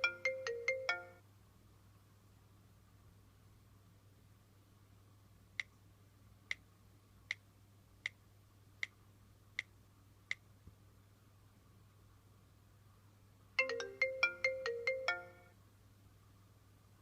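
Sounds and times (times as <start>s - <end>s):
faint low hum: 0.0s - 17.0s.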